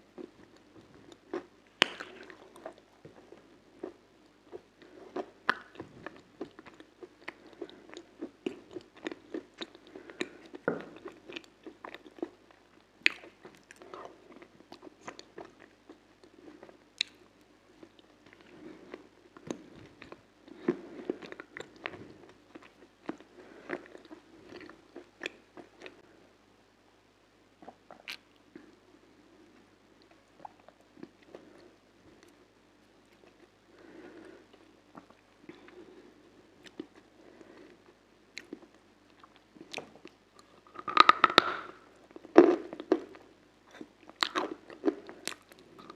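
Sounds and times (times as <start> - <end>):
chewing: 0.2 - 26.0, 33.1 - 45.9
person crunching treat: 39.2 - 45.9.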